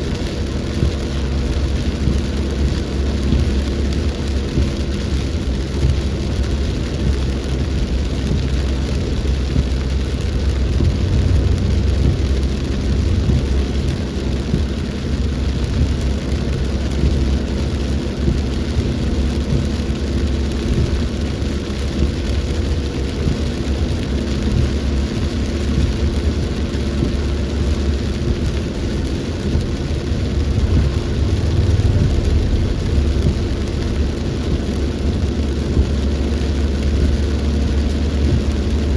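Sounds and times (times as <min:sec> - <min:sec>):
deep rumble: 0:00.0 - 0:38.9
steady rain falling: 0:00.0 - 0:38.9.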